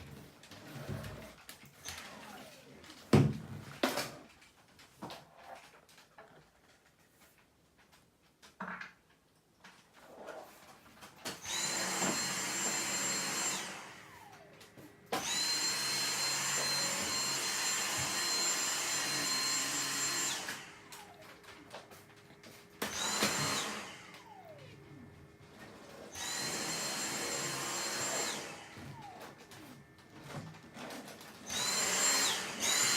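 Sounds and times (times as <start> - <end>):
vacuum cleaner running: 0.0 - 4.1, 11.2 - 32.9
vacuum motor winding down: 11.4 - 21.8, 22.8 - 32.9.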